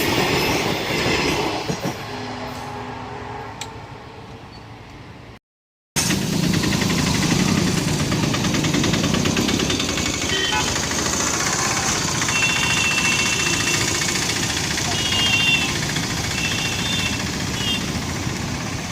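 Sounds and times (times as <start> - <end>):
train engine rattling: 6.0 - 18.9.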